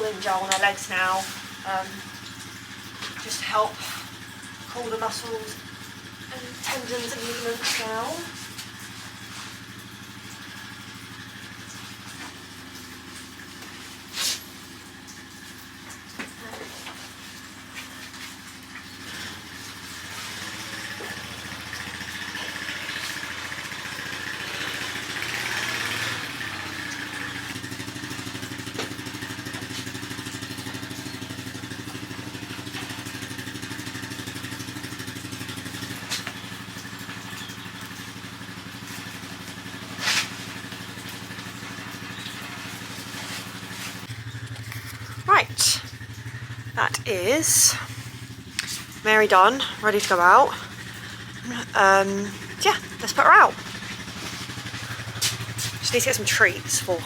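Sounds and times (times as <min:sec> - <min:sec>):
motor hum: 0:00.0 - 0:57.0
hiss: 0:14.1 - 0:14.5.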